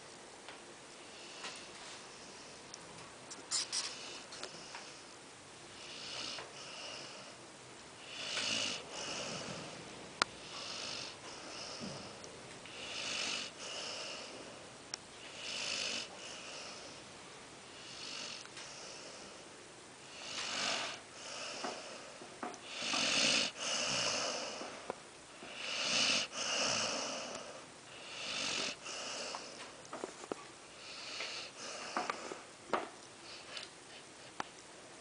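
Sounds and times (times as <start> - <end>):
person snoring: 12.7 - 14.3, 22.6 - 24.7, 25.5 - 29.5.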